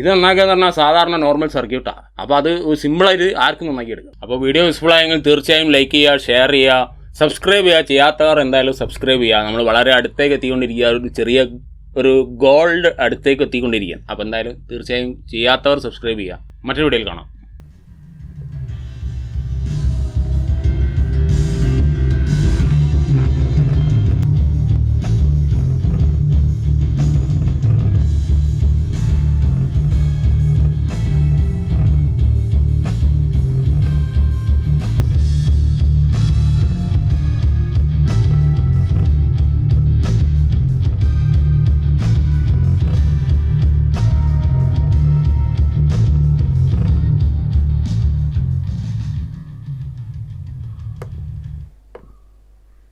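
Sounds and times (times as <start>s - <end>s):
rock music with bass and guitar: 17.6s - 51.7s.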